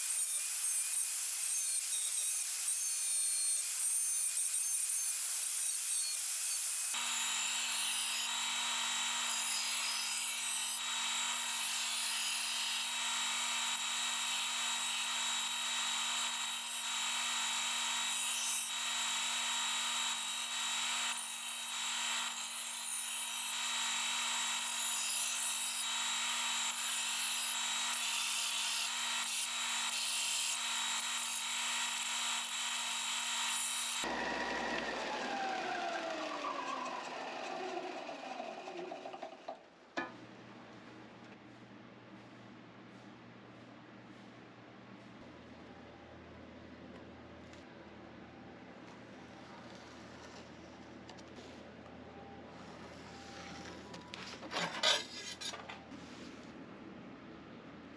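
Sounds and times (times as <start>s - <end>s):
angle grinder cutting steel: 0.0s - 34.4s.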